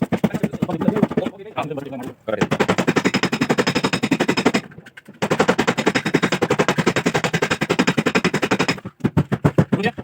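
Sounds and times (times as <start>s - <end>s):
machine hammering on sheet metal: 2.4s - 4.6s, 5.2s - 10.0s.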